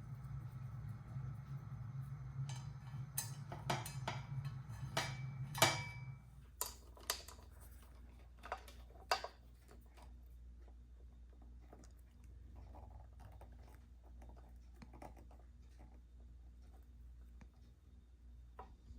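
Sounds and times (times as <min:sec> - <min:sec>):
low steady hum: 0:00.0 - 0:18.9
small parts clicking and tapping: 0:06.6 - 0:07.5.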